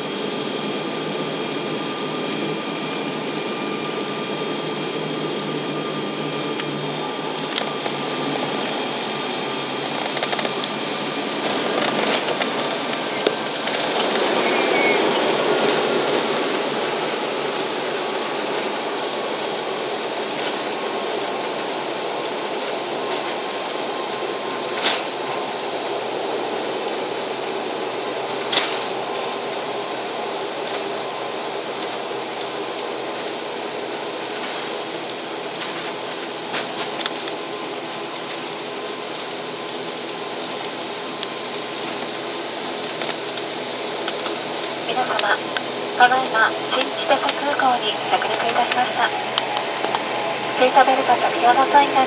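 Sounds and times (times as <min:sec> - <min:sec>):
turboprop engine drone in cabin: 0:00.0 - 0:36.2, 0:37.8 - 0:52.0
steady tones: 0:44.8 - 0:52.0.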